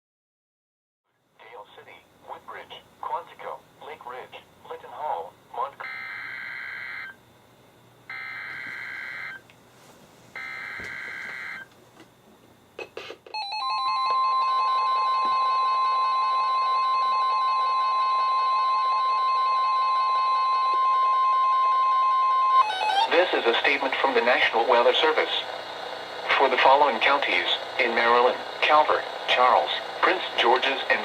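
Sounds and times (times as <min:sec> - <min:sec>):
steady warning alarm tone: 0:05.4 - 0:07.3, 0:08.0 - 0:09.5, 0:10.4 - 0:11.7, 0:12.8 - 0:31.0.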